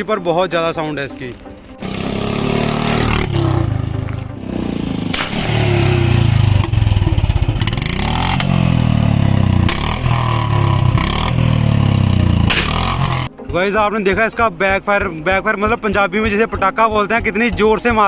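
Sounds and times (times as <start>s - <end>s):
motorcycle engine revving: 1.3s - 13.6s
exhaust backfire pops: 1.8s - 13.3s.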